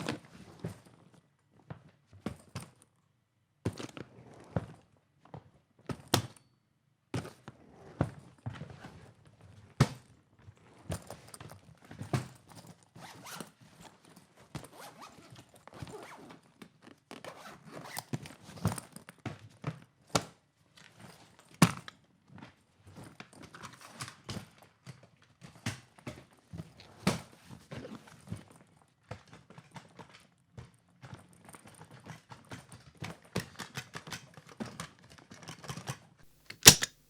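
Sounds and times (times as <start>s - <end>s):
suitcase clicks and knocks: 36.5s - 36.9s.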